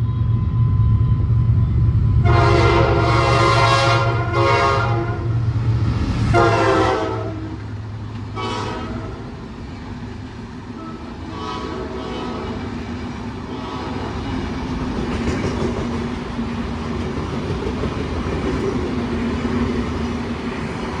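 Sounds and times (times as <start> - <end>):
locomotive rumble: 0.0 - 21.0
train horn blasts: 2.2 - 5.4, 6.3 - 7.7, 8.3 - 9.3, 10.8 - 12.8, 13.5 - 14.2
train wheels clattering over rails: 12.4 - 21.0.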